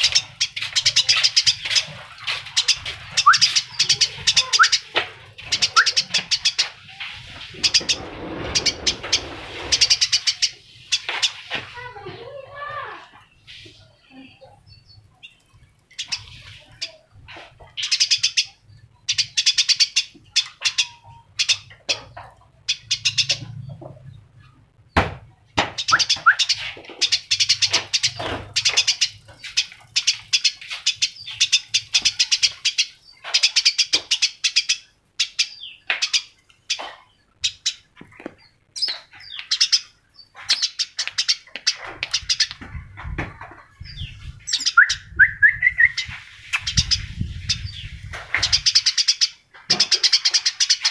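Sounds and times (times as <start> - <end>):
songbird chirping in high trills: 3.2 - 4.9, 43.8 - 47.9.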